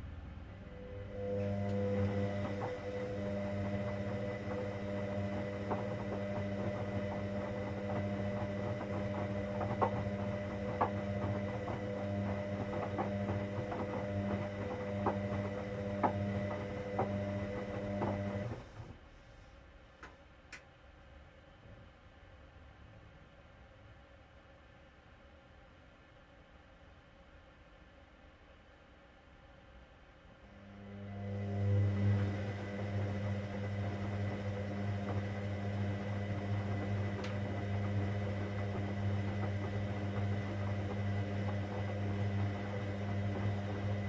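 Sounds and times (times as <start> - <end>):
washing machine humming: 0.0 - 19.1, 30.4 - 44.0.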